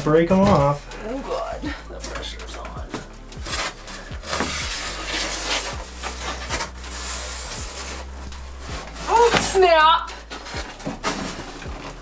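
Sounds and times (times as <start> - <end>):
boards scraping and rubbing: 0.0 - 12.0
steady low hum: 0.0 - 12.0.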